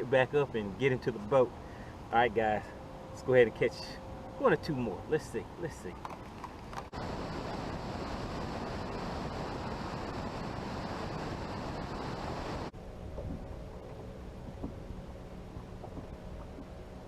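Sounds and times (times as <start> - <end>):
steady low hum: 0.0 - 17.0
water splashing from boat: 6.9 - 17.0
wind on microphone: 6.9 - 17.0.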